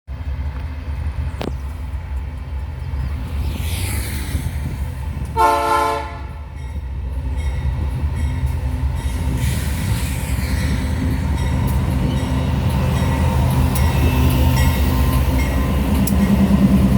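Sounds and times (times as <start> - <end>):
freight train rumbling past: 0.1 - 16.9
locomotive air horn chord: 5.4 - 6.4.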